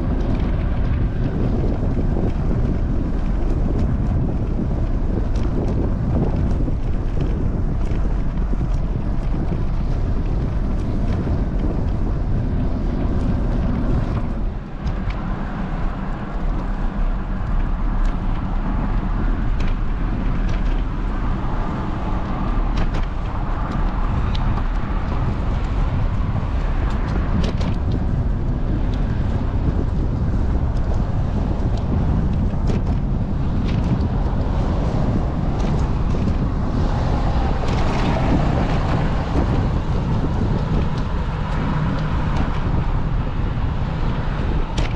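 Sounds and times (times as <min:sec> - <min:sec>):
vehicle road noise: 0:00.0 - 0:44.9
wind buffeting microphone: 0:00.0 - 0:44.9.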